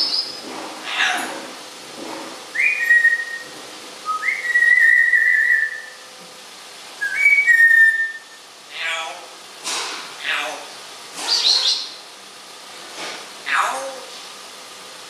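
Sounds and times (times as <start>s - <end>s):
parrot whistling: 2.5s - 6.1s, 7.0s - 8.4s, 11.3s - 12.0s.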